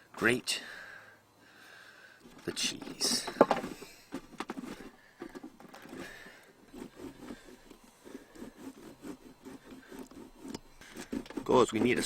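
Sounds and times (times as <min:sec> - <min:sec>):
cheese grating on box grater: 0:02.4 - 0:12.0.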